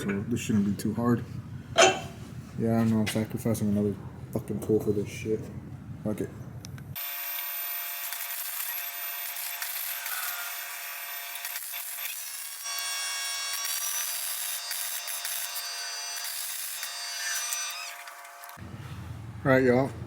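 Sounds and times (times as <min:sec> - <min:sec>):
electric welder crackling arc: 0:07.0 - 0:18.6.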